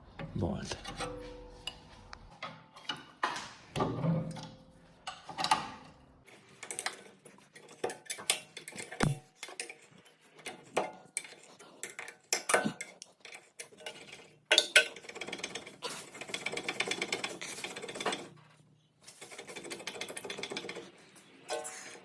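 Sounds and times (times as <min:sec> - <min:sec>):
rapid clicking: 0:19.2 - 0:21.2.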